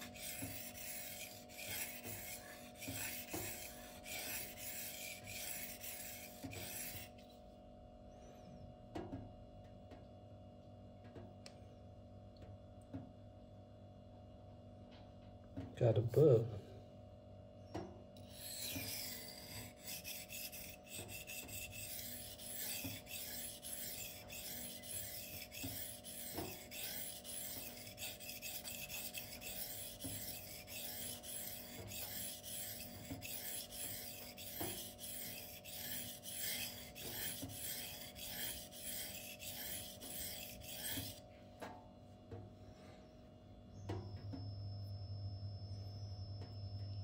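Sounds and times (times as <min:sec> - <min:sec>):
knife scraping on sharpening stone: 0:00.0 - 0:07.1, 0:18.2 - 0:41.2.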